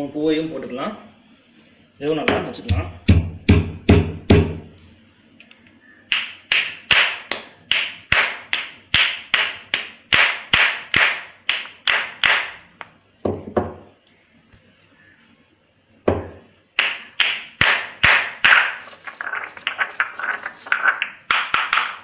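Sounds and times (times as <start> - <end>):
pestle pounding in a mortar: 2.3 - 4.7.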